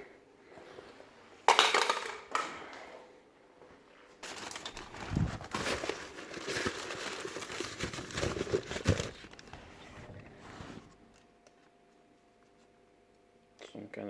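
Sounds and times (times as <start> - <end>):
faint steady hum: 0.0 - 14.0
plastic crinkling and rustling: 4.2 - 11.2.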